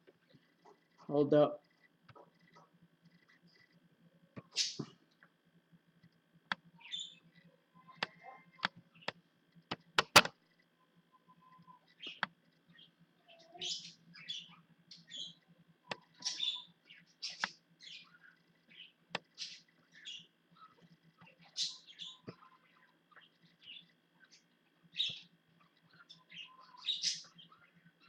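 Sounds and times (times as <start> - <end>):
mouse and keyboard clicks: 8.0 - 10.3.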